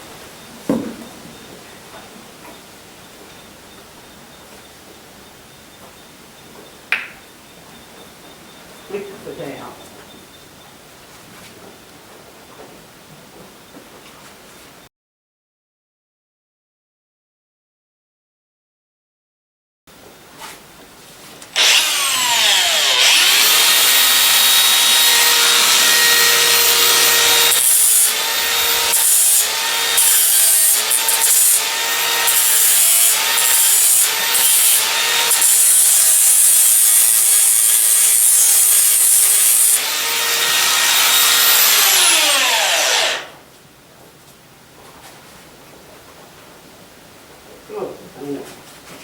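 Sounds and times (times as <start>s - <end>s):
electric hoof grinder: 21.6s - 43.4s.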